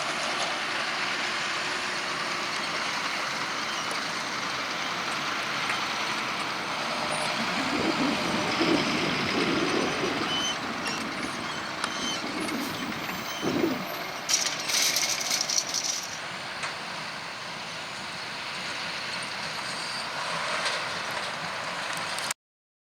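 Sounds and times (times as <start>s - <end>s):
tractor and baler machinery: 0.0s - 22.4s
clattering rattles: 12.4s - 16.2s.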